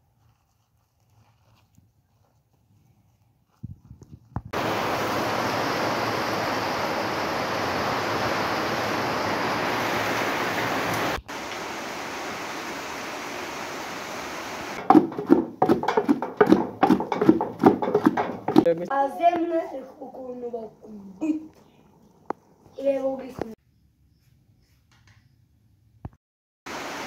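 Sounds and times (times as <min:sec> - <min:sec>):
heavy rain falling: 0:04.6 - 0:14.8, 0:26.7 - 0:27.0.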